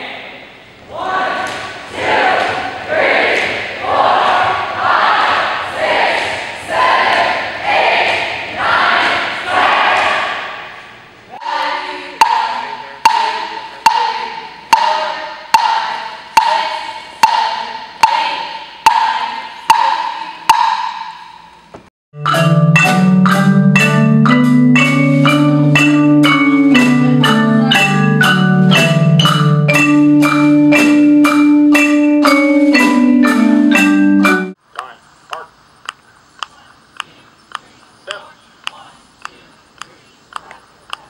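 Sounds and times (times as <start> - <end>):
marimba playing: 12.2 - 16.5, 22.2 - 34.6.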